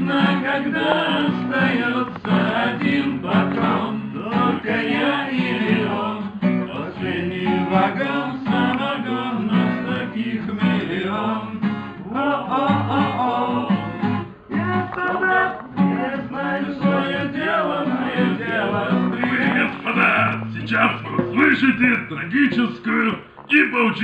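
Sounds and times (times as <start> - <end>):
person singing: 0.0 - 21.5
strummed acoustic guitar: 0.0 - 24.0.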